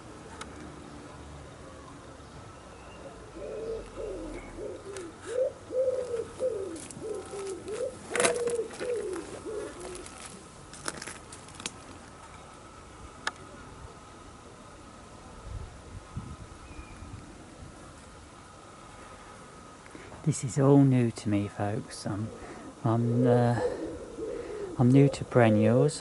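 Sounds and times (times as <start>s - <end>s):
pigeon cooing: 3.0s - 10.4s, 22.2s - 25.8s.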